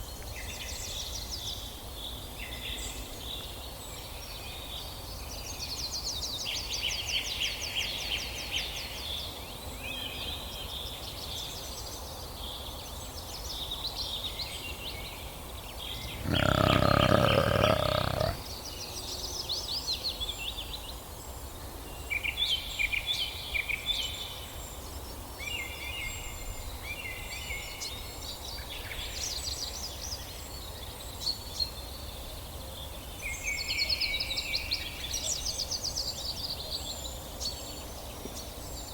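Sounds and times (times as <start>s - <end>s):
deep animal call: 16.0s - 18.5s.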